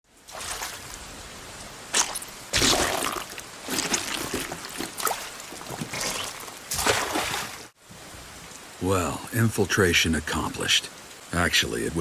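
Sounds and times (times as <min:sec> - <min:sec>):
steady rain: 0:00.0 - 0:12.0
watery splashes: 0:00.1 - 0:07.8.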